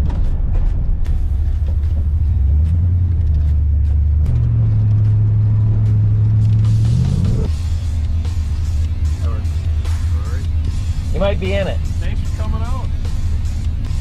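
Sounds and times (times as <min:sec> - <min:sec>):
car engine revving: 0:00.0 - 0:14.0.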